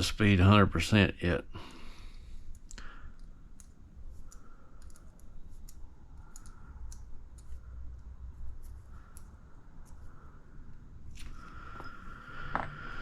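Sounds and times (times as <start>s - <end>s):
small parts clicking: 2.1s - 10.1s.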